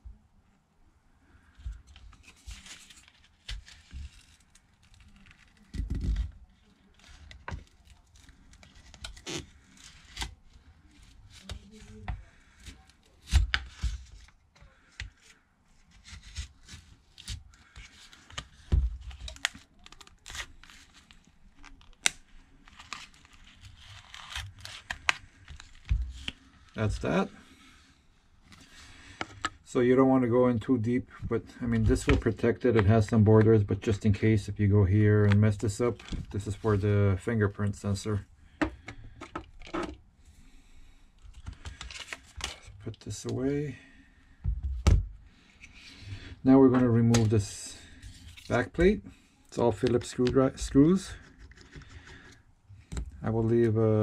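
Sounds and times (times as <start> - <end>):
adhesive peeling and tearing: 2.2 - 10.4, 16.0 - 26.7.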